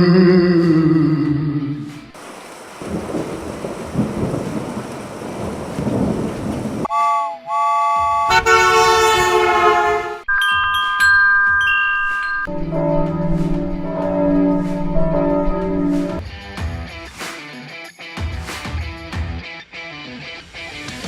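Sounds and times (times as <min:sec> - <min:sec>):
thunder rumbling with rain: 0:02.2 - 0:06.9
bell tones with clicks: 0:10.3 - 0:12.6
chime-like tones: 0:10.3 - 0:15.8.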